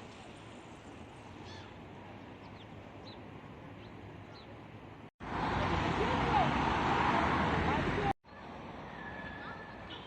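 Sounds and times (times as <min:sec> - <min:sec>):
faint outdoor background noise: 0:00.0 - 0:10.0
small birds chirping: 0:01.4 - 0:04.6.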